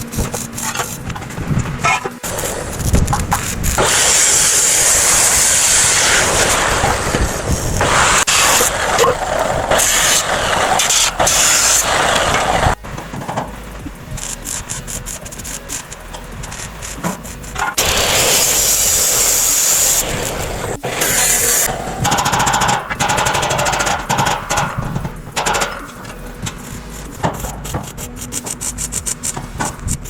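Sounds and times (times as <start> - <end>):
power tool running: 0.0 - 30.0
knocks and clicks: 22.0 - 30.0.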